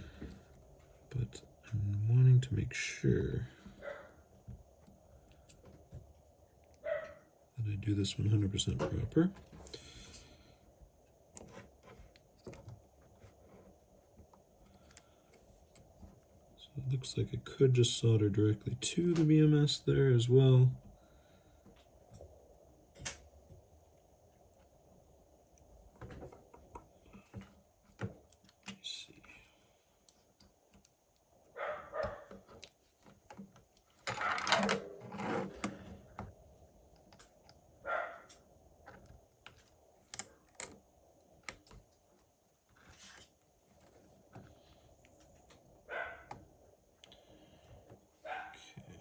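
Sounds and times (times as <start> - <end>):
parts rustling: 38.2 - 48.3.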